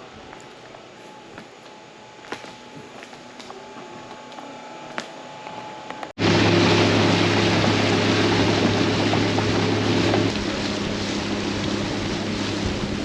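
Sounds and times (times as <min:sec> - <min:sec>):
motorboat engine running: 0:03.5 - 0:13.0
rushing water: 0:06.2 - 0:13.0
wind noise: 0:06.2 - 0:13.0.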